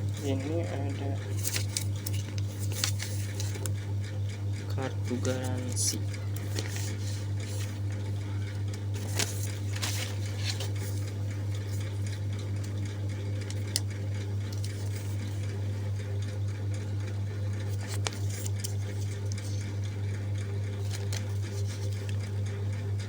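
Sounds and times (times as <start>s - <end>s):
steady low hum: 0.0s - 23.0s
paper and packaging rustling: 0.4s - 3.7s, 5.1s - 8.0s, 8.9s - 12.0s, 14.5s - 15.4s, 17.6s - 19.6s, 20.8s - 22.2s.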